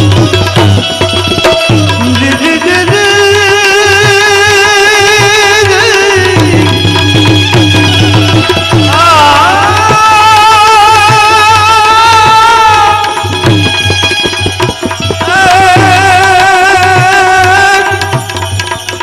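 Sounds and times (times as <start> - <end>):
tabla playing a rhythm: 0.0 - 19.0
wavering melody: 5.7 - 19.0.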